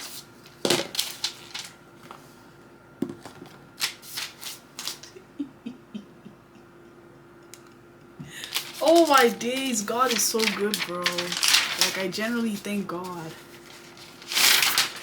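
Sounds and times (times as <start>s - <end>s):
packaging rustling and crinkling: 0.0s - 2.2s, 8.4s - 15.0s.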